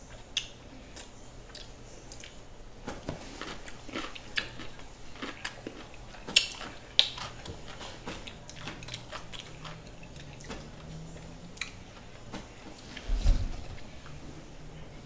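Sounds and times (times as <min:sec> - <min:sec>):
person chewing crunchy food: 0:03.1 - 0:13.1.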